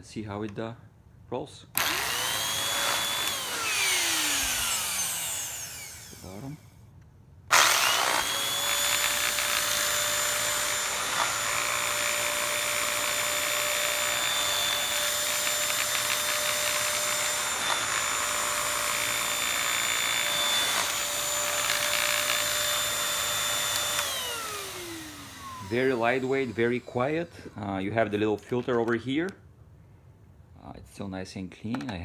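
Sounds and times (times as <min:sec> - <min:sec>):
handheld vacuum cleaner running: 0:01.8 - 0:06.6, 0:07.5 - 0:27.5.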